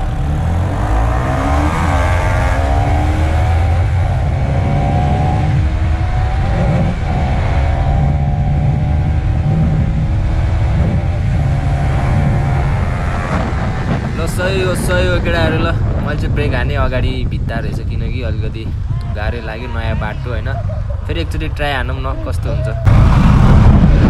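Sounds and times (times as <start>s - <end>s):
motorcycle engine accelerating hard: 0.0s - 16.4s, 22.2s - 24.0s
heavy low rumble: 0.0s - 24.0s.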